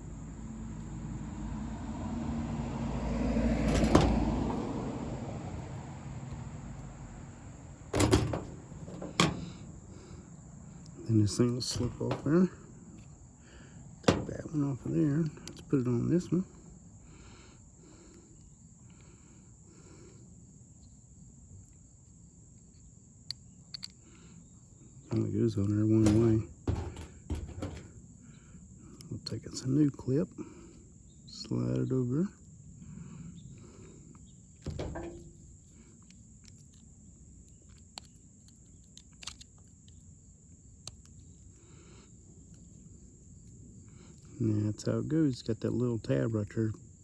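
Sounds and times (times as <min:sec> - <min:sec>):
light metal clicks: 0:03.6 - 0:04.7, 0:07.9 - 0:09.7, 0:14.0 - 0:14.6, 0:25.1 - 0:27.9.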